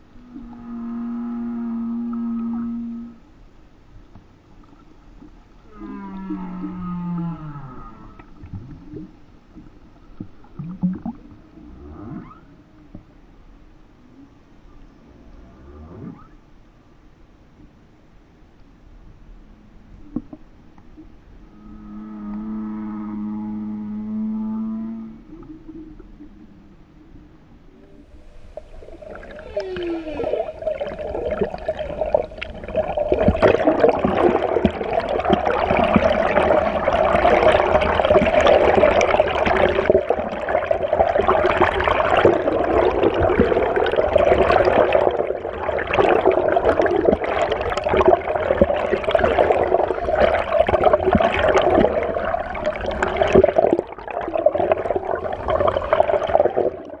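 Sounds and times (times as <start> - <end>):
humpback whale singing: 27.8 - 43.8.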